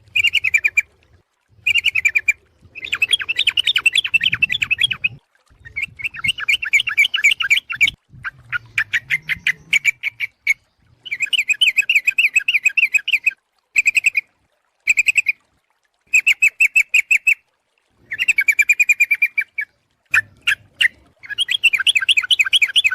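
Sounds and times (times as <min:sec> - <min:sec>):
bulbul chattering: 0:01.6 - 0:12.7.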